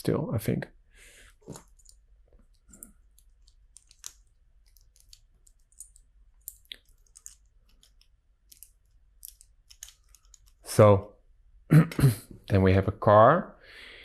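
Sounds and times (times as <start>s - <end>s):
plastic toy bricks clicking: 3.2s - 10.6s.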